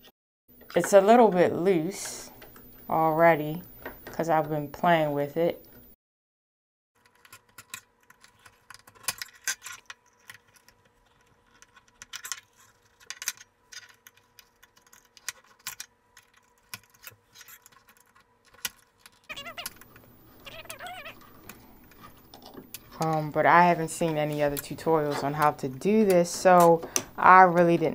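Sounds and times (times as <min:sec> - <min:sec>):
plastic clicks and scrapes: 0:07.0 - 0:27.7.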